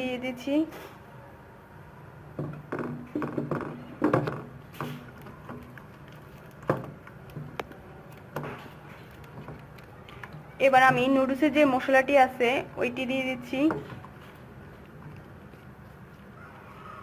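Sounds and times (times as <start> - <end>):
wet squishes of mixing by hand: 4.5 - 17.0.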